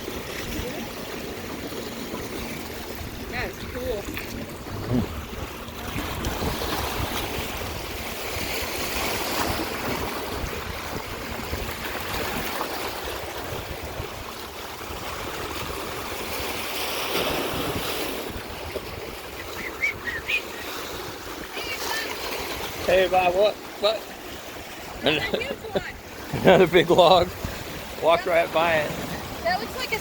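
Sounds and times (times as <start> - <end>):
waves washing onto beach: 0.0 - 30.0
wind buffeting microphone: 2.7 - 16.5, 24.3 - 30.0.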